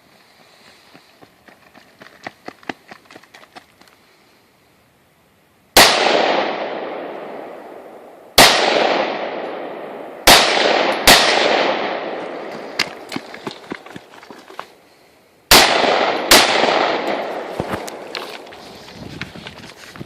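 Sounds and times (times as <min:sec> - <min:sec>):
rifle shots with long echo: 0:05.8 - 0:13.1, 0:15.5 - 0:18.1.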